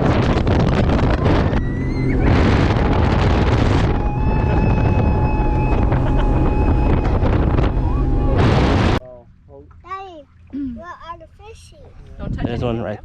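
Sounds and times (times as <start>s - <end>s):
wind buffeting microphone: 0.0s - 9.0s, 12.2s - 13.0s
boat engine rumble: 0.0s - 13.0s
faint whine: 1.1s - 9.2s.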